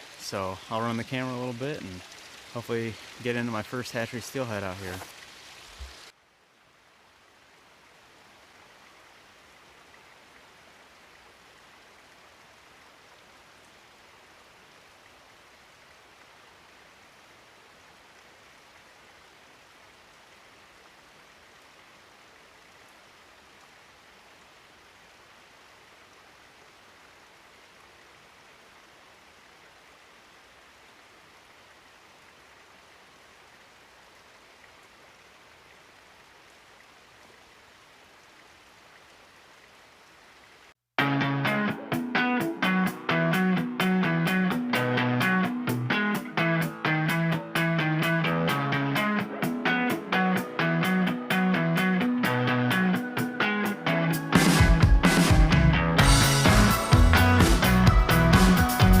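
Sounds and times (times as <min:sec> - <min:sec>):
river water rushing: 0:00.0 - 0:40.7.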